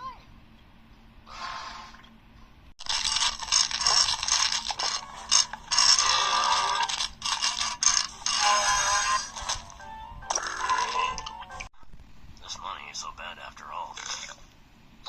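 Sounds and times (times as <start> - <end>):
long rough burp: 10.3 - 11.2.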